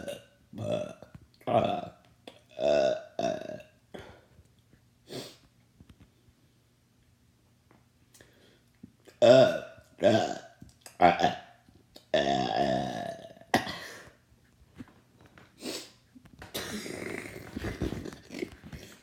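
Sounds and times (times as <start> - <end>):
person burping: 0.0 - 4.2, 9.1 - 14.2, 16.5 - 19.0.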